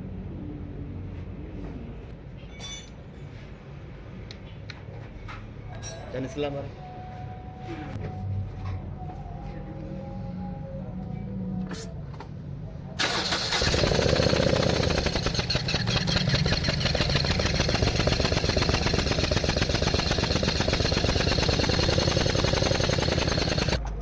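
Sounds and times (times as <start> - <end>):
car engine cranking and starting: 13.0 - 23.8
car engine running: 13.0 - 23.8.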